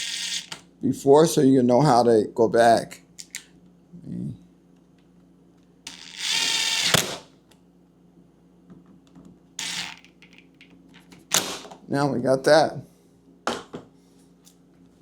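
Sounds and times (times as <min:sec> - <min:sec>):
power drill whirring: 0:05.9 - 0:07.2, 0:09.6 - 0:10.0.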